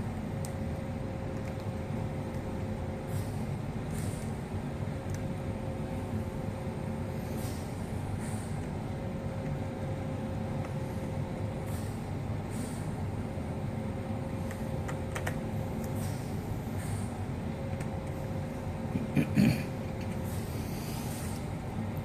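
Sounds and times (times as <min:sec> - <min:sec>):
low background hum: 0:00.0 - 0:22.0.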